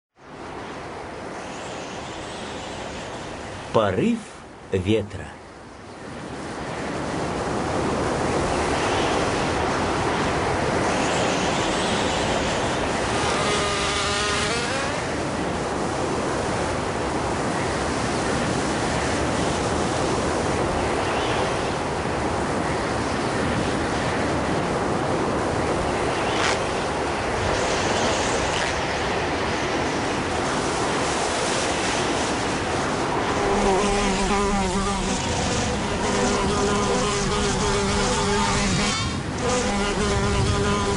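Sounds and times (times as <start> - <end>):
wind gusting: 5.4 - 40.9
wavering buzz: 8.8 - 15.6, 30.5 - 40.9.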